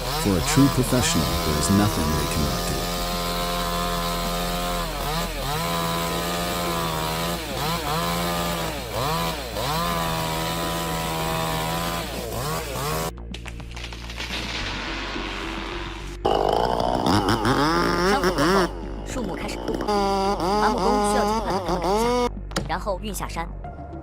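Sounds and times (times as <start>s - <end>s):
chainsaw cutting wood: 0.0s - 13.1s, 13.8s - 22.3s.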